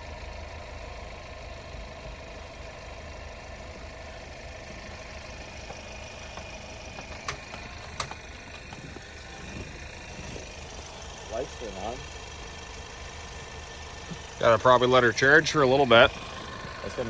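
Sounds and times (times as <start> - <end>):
engine idling: 0.0 - 17.0
sharp clicks: 5.6 - 9.0.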